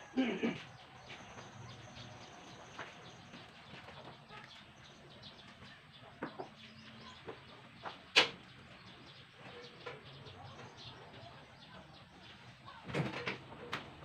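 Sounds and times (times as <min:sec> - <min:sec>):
chickens clucking: 0:00.0 - 0:14.0.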